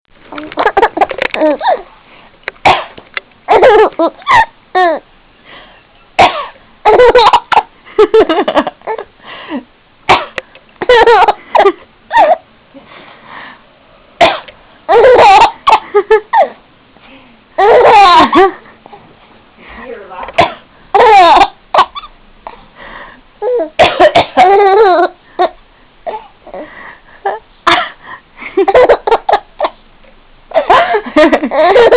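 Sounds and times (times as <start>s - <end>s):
baby giggling and laughing: 0.3s - 1.9s, 3.5s - 5.0s, 17.6s - 18.6s, 20.9s - 22.1s, 30.5s - 31.9s
adult coughing: 14.2s - 14.5s, 20.4s - 20.6s, 23.8s - 24.5s.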